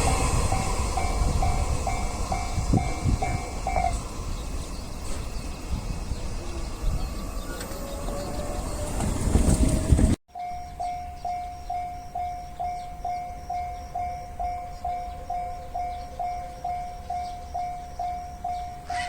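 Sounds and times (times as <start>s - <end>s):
level-crossing warning bell: 0.0s - 9.2s, 10.3s - 19.0s
freight train wagons rolling: 0.0s - 10.2s.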